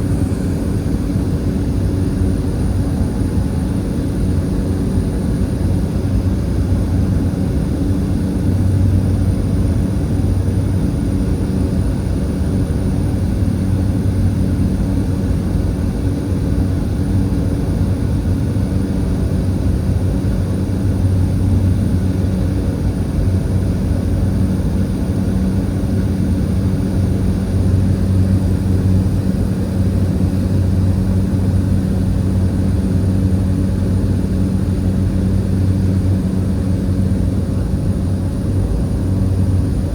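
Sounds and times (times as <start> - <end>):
propeller plane engine droning: 0.0 - 39.9.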